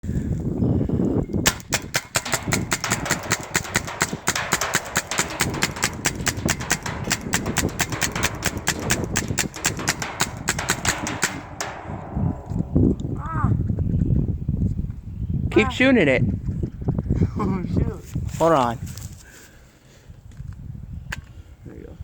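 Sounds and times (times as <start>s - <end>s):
paintball gun firing: 1.4s - 13.2s
low rumble: 5.6s - 14.4s.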